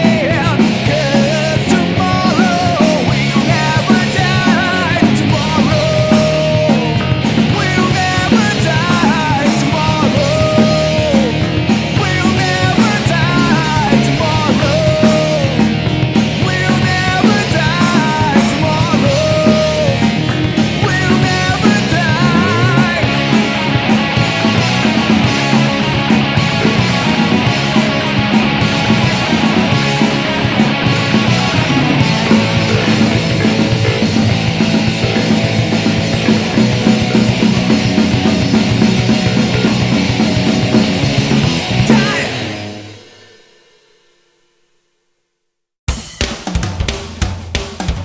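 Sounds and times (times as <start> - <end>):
steady drum beat: 0.0 - 43.6, 45.9 - 48.0
heavy rock music: 0.0 - 43.9, 45.9 - 48.0
distorted electric guitar: 0.0 - 44.0
gliding lead melody: 10.6 - 16.4.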